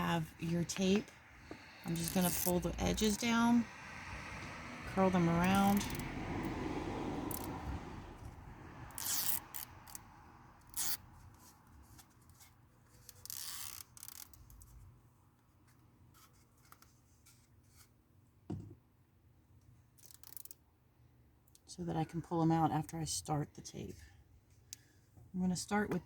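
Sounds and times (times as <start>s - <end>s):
soft knock: 18.5s - 18.8s.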